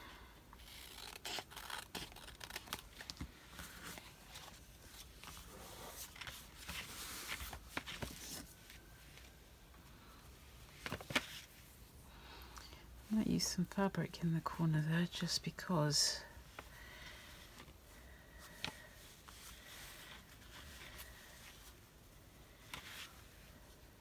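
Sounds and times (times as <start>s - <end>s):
paper rustling: 0.6s - 9.3s, 10.7s - 11.6s.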